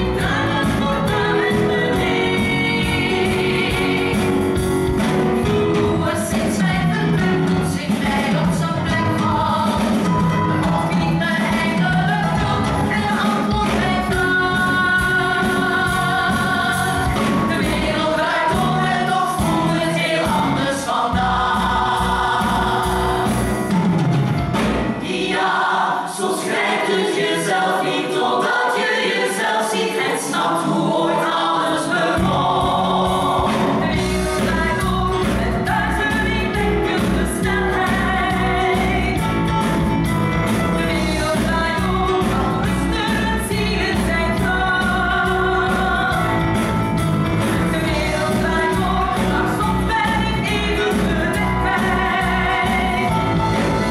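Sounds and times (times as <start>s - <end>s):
group of singers singing: 0.0s - 23.8s, 24.8s - 53.9s
band with drum beat: 0.0s - 25.4s, 32.1s - 53.9s.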